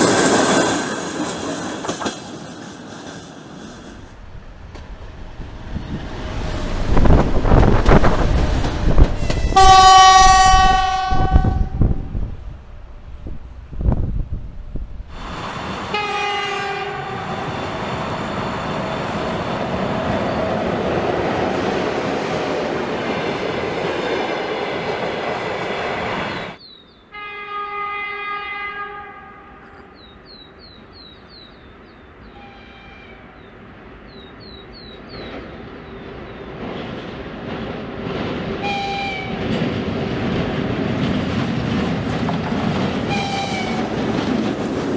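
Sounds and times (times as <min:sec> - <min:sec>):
moving train rumble: 0:00.0 - 0:27.2, 0:27.9 - 0:44.9
train horn blast: 0:09.2 - 0:12.1, 0:15.9 - 0:17.5, 0:27.1 - 0:29.9, 0:32.3 - 0:33.3, 0:38.6 - 0:39.5, 0:43.1 - 0:43.9.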